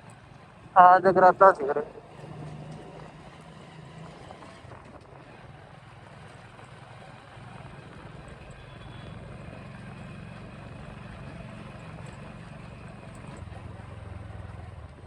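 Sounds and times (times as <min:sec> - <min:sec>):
road and wind noise: 0:00.0 - 0:15.0
motorcycle engine running: 0:01.9 - 0:15.0.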